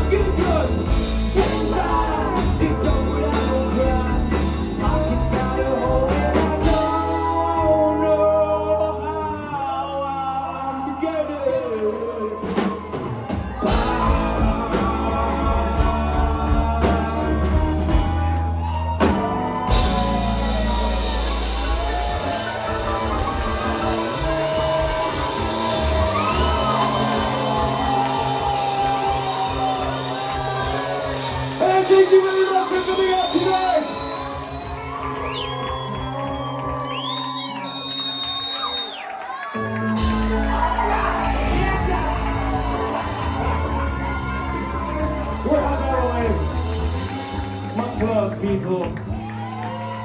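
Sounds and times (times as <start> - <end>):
drums: 0.0 - 8.3, 12.3 - 50.0
live rock band playing: 0.0 - 9.0, 12.4 - 38.7, 39.6 - 50.0
person singing: 0.0 - 12.7, 13.6 - 18.4, 39.6 - 46.6
bass guitar: 0.0 - 38.8, 39.6 - 50.0.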